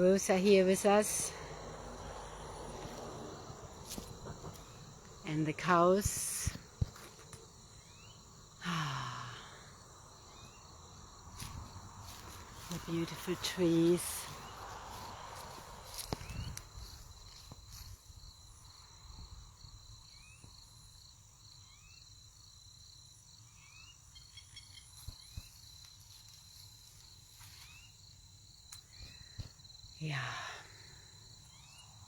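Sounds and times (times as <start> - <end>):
insect chorus trilling: 0.0 - 32.0.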